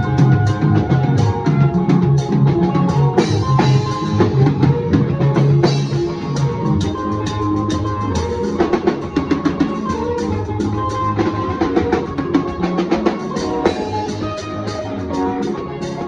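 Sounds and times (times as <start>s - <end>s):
band music: 0.0s - 16.0s.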